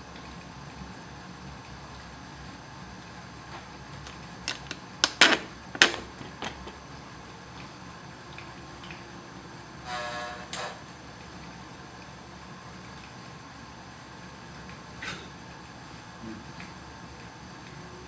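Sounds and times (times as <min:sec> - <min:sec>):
sharp clicks and knocks: 0:04.0 - 0:06.8.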